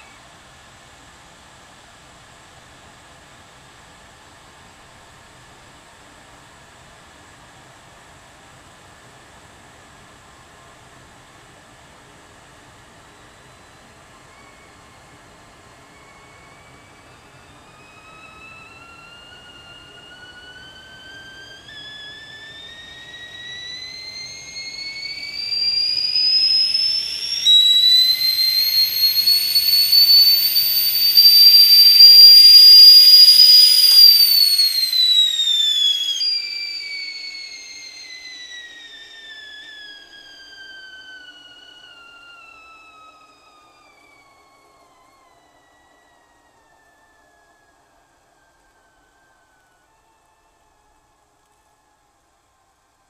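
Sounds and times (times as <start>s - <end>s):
kettle whistling: 0.0s - 0.4s, 12.0s - 52.9s.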